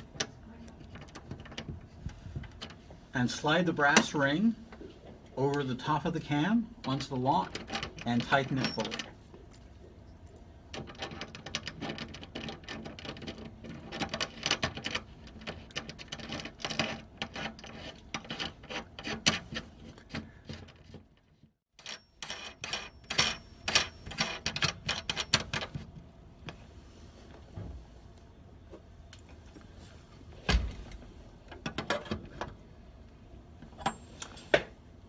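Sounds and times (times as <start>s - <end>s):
metal ring clicking and scraping: 10.7s - 21.2s, 21.8s - 25.8s.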